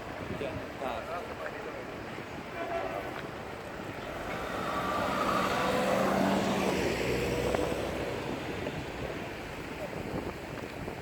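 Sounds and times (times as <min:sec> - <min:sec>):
engine passing by: 0:04.1 - 0:09.0.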